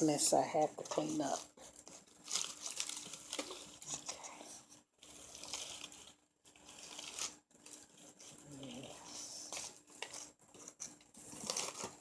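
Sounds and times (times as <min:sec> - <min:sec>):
potting soil rustling: 0:00.0 - 0:04.3
plant packaging crinkling: 0:00.4 - 0:04.3, 0:05.0 - 0:12.0.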